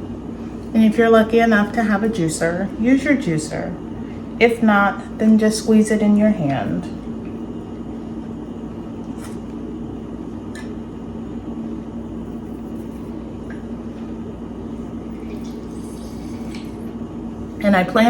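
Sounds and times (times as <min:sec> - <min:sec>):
juicer motor humming: 0:14.6 - 0:17.6.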